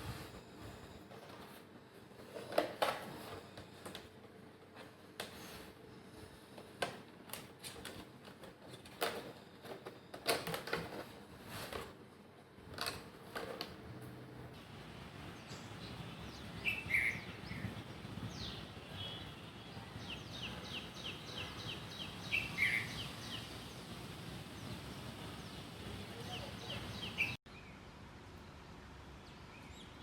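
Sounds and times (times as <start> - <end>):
outdoor background noise: 0.0 - 30.0
small birds chirping: 15.4 - 28.6.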